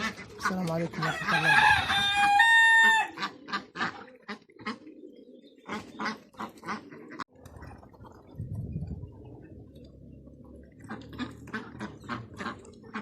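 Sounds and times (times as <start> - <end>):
ducks quacking: 0.0 - 8.3, 10.2 - 13.0
rooster crowing: 1.0 - 3.2.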